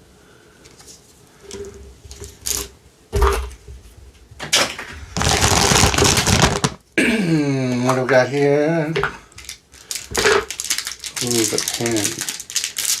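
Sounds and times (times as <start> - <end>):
plastic rustling: 0.6 - 2.7, 5.1 - 6.8, 9.0 - 13.0.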